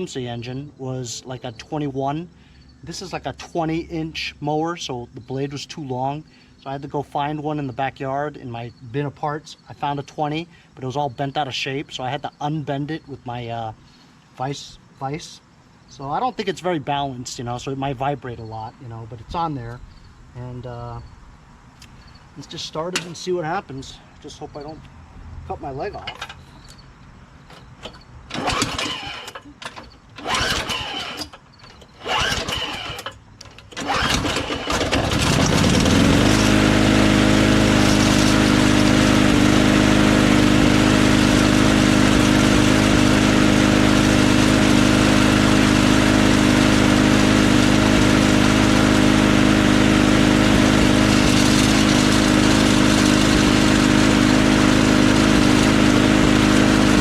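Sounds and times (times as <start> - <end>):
lawn mower engine running: 25.6 - 57.0
recoil starter pulls: 27.4 - 57.0.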